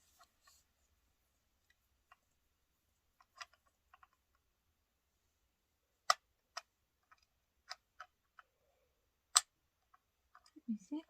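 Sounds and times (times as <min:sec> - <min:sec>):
plastic bricks clicking: 0:03.2 - 0:04.4, 0:06.0 - 0:08.5, 0:09.3 - 0:10.6.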